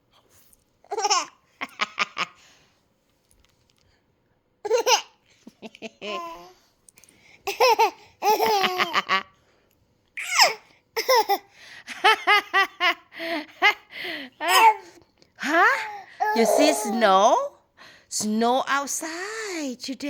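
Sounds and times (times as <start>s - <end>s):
baby laughing and babbling: 0.9s - 1.8s, 4.6s - 5.2s, 6.0s - 6.6s, 7.5s - 9.1s, 10.2s - 11.5s, 14.4s - 17.5s.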